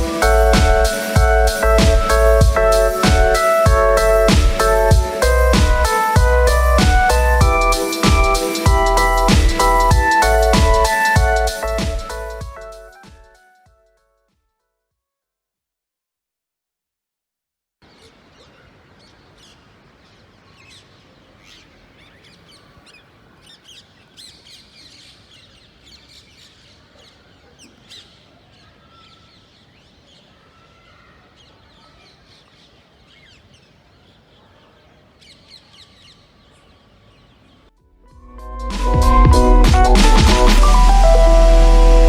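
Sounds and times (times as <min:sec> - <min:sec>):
birds chirping: 0:17.8 - 0:37.8
outdoor background hiss: 0:17.8 - 0:37.8.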